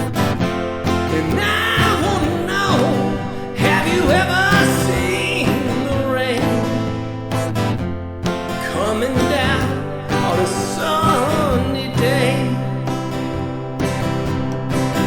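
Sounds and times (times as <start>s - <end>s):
acoustic guitar strumming: 0.0s - 15.0s
person singing: 0.9s - 7.6s, 8.5s - 13.7s.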